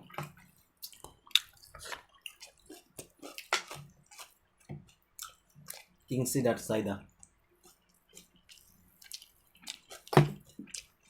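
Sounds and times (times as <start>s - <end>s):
wet eating clicks and taps: 7.2s - 10.9s.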